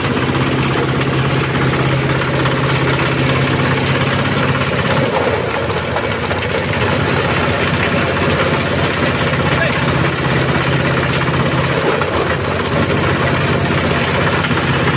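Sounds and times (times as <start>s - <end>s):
chopping machine humming: 0.0s - 14.9s.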